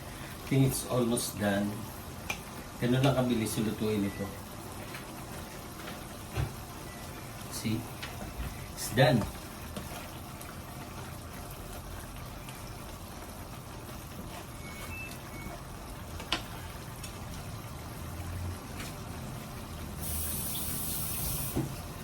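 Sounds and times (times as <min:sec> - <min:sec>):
pot bubbling on the boil: 0:00.0 - 0:22.0
brief high hiss: 0:20.0 - 0:21.7.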